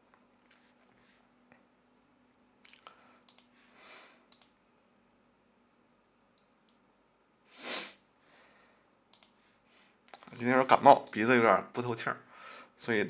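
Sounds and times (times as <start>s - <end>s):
faint sharp clicks: 2.6s - 3.5s, 4.3s - 4.6s, 9.1s - 9.4s
loud sniff: 7.5s - 8.0s
soft breath: 7.5s - 10.0s, 12.3s - 12.8s.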